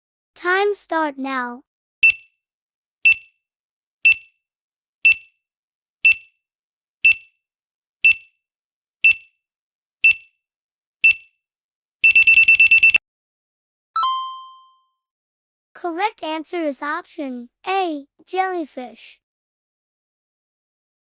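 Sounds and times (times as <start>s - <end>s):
countdown timer beeping: 2.0s - 2.2s, 14.0s - 14.8s.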